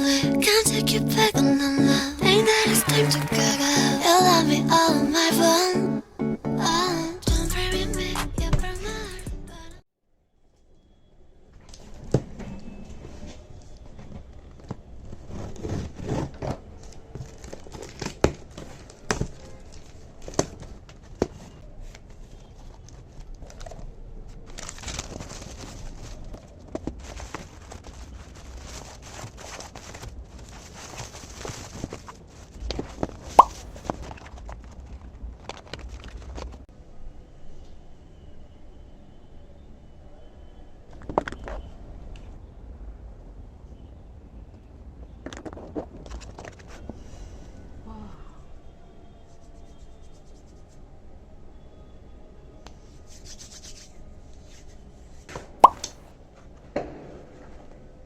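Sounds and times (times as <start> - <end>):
ringing plop-like tone: 55.6 - 55.9.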